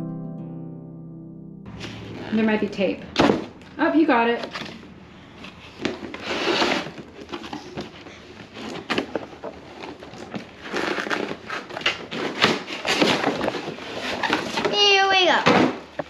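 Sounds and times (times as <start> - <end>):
toy packaging rustling and crinkling: 4.4 - 16.0.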